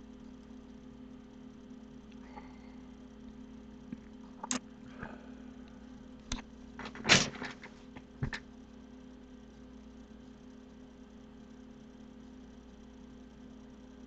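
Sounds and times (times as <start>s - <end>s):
steady low hum: 0.0s - 14.0s
sharp knocks and clatters: 6.8s - 8.4s.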